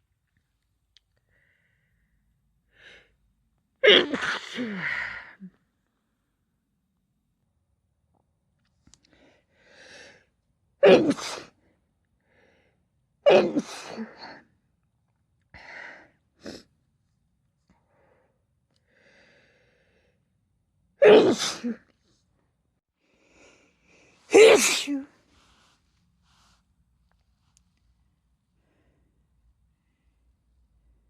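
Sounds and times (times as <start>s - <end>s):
loud sneezes: 3.8s - 5.2s, 10.8s - 11.6s, 13.3s - 14.2s, 21.0s - 21.9s, 24.3s - 25.2s.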